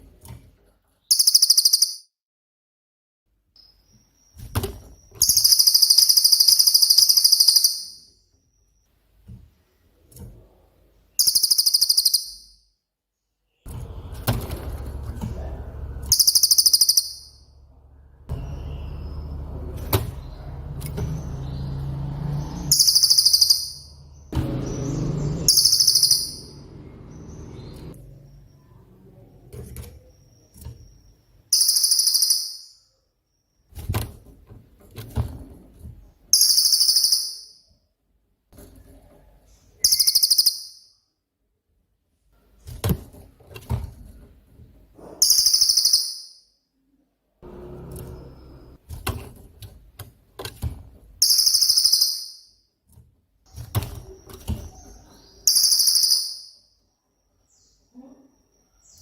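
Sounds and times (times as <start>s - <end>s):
songbird high-pitched trilled bursts: 1.1s - 2.1s, 5.0s - 8.2s, 11.2s - 12.6s, 16.1s - 17.6s, 22.6s - 26.7s, 31.1s - 32.9s, 36.4s - 37.6s, 39.8s - 40.9s, 45.3s - 46.4s, 51.2s - 52.6s, 55.2s - 56.8s.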